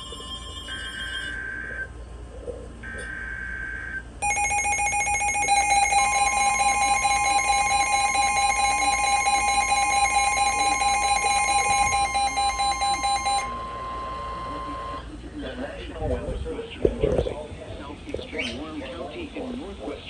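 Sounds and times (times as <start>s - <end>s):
steady warning alarm tone: 0.0s - 1.8s, 2.9s - 15.0s
loud buzzy alarm tone: 3.1s - 15.0s.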